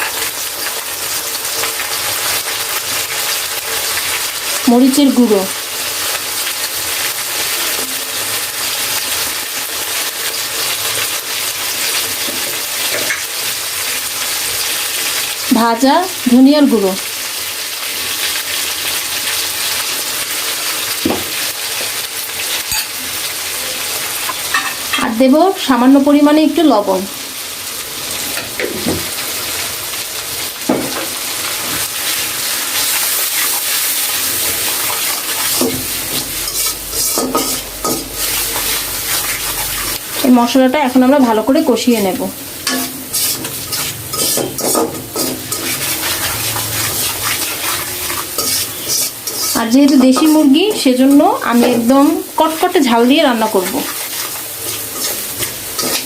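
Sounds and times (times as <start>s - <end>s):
spices sizzling in hot oil: 0.0s - 56.0s
spatula scraping pan: 32.8s - 40.2s, 42.6s - 52.0s, 53.4s - 56.0s.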